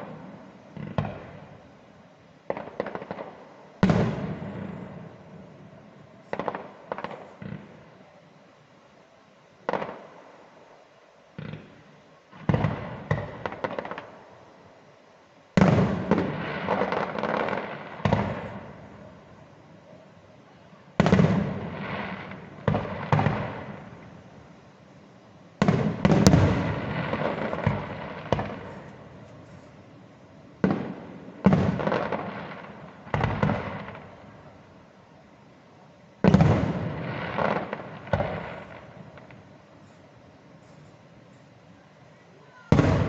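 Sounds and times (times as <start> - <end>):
firework bangs: 0.0 - 1.8, 2.4 - 5.6, 6.2 - 7.9, 9.6 - 10.6, 11.3 - 14.3, 15.5 - 19.7, 20.9 - 24.6, 25.5 - 29.9, 30.5 - 34.7, 36.2 - 41.5, 42.4 - 43.0
firework crackles: 0.0 - 43.0.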